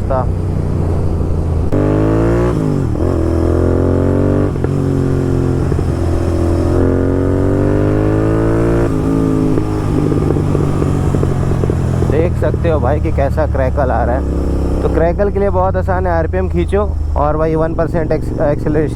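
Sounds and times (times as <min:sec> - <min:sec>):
motorcycle engine accelerating hard: 0:00.0 - 0:15.5
exhaust crackling and popping: 0:00.0 - 0:18.9.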